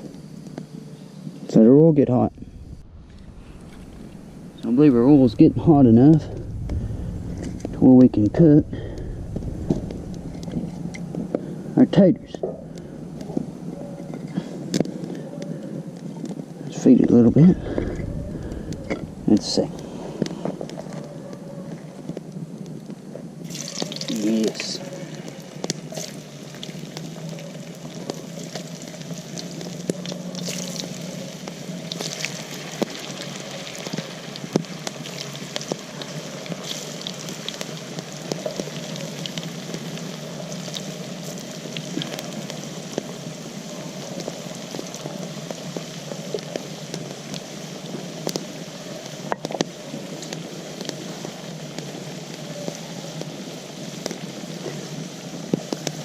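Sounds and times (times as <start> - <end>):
potatoes sizzling in oil: 23.4 - 56.0.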